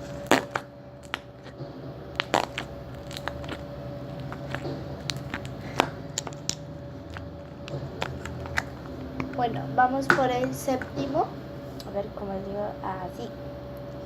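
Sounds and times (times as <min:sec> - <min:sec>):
crunchy slime crackling: 0:00.0 - 0:11.0
faint steady hum: 0:00.0 - 0:14.0.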